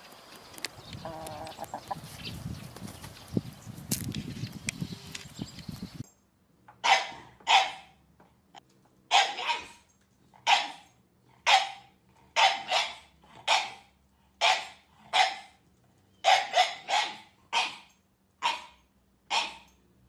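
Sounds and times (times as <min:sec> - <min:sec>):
dog barking: 0:06.8 - 0:08.0, 0:09.1 - 0:09.8, 0:10.4 - 0:10.8, 0:11.4 - 0:15.6, 0:16.2 - 0:19.7.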